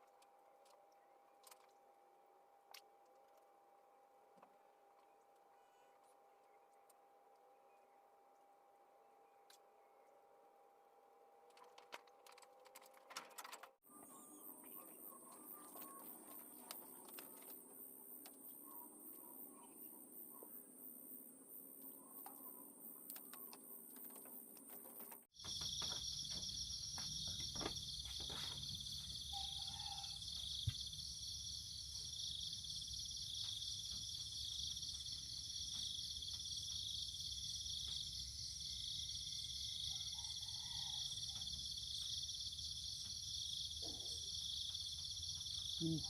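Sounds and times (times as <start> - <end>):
insects chirping: 13.9 - 46.0.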